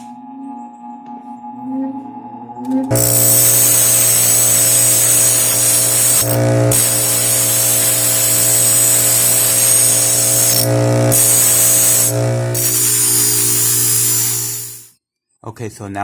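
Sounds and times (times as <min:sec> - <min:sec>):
electric grinder humming: 0:02.9 - 0:14.9
knife grinding hiss: 0:02.9 - 0:14.9.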